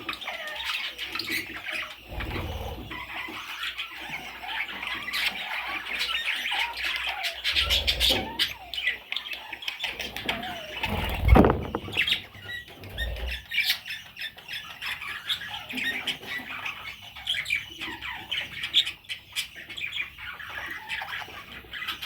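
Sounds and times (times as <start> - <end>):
budgerigars chirping: 0.0 - 22.0
low rumbles: 10.8 - 12.2.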